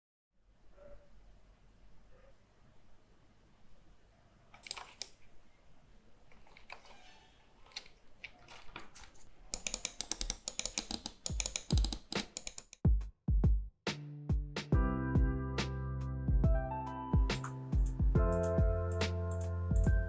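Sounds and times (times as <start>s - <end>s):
plastic buttons clicking: 4.6s - 5.2s, 8.5s - 12.8s
electronic beat with kick drums: 12.8s - 13.7s, 17.2s - 20.0s.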